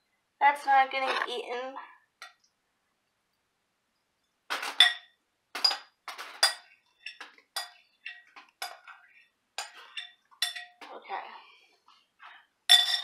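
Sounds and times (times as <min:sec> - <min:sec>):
dishes and cutlery clattering: 0:04.5 - 0:11.0, 0:12.7 - 0:13.0.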